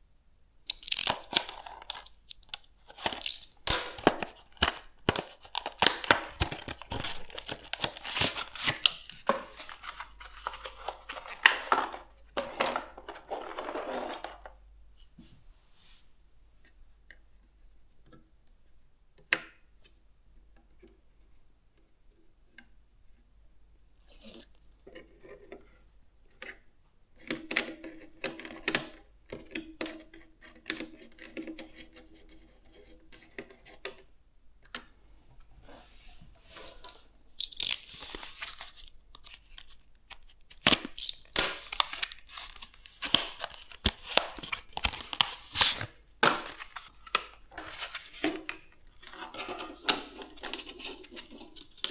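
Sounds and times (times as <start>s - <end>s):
packaging tearing and rustling: 0.7s - 13.5s, 37.4s - 48.4s.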